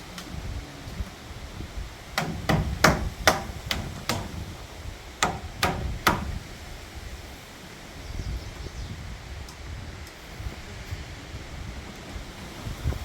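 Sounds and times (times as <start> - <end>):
hammer blows: 2.1 - 6.6.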